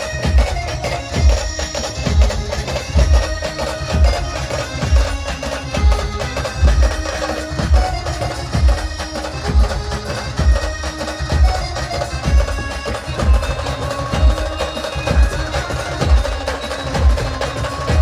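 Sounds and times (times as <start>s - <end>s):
bass drum beating: 17.0s - 18.0s.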